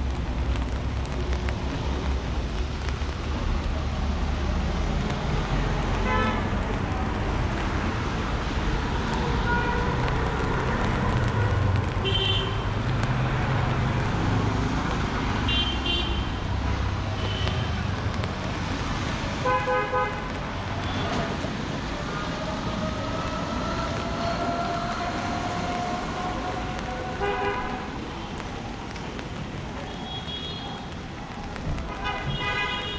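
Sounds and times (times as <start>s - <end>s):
city street traffic: 0.0s - 32.9s
vehicle horns honking: 32.0s - 32.9s.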